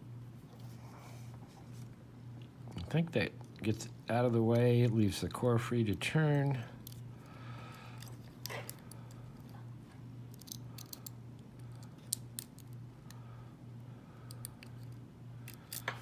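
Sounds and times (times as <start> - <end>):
lock picking metallic clicks: 10.3 - 12.8, 14.3 - 16.0.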